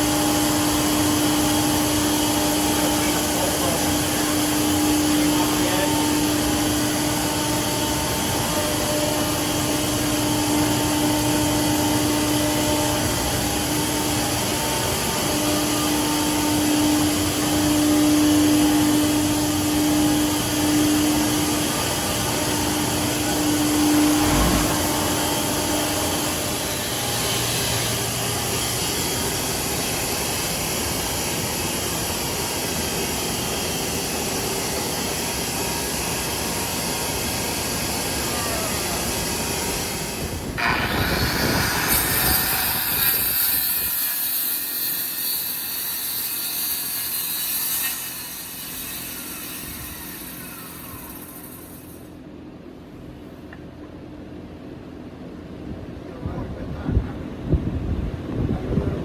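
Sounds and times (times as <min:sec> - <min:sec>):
machine humming: 0:00.0 - 0:31.1
steady rushing noise: 0:23.4 - 0:27.3.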